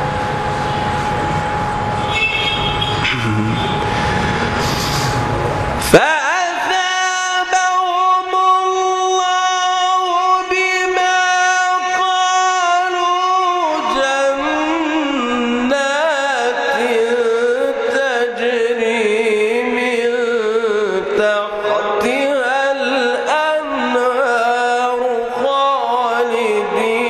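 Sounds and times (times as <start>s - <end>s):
man chanting melodic recitation: 3.0s - 3.9s, 5.8s - 27.0s.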